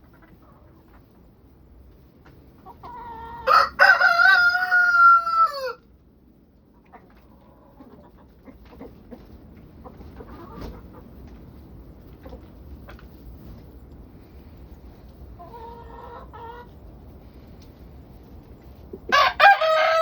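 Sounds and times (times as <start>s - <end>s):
rooster crowing: 3.4s - 5.8s, 19.1s - 20.0s.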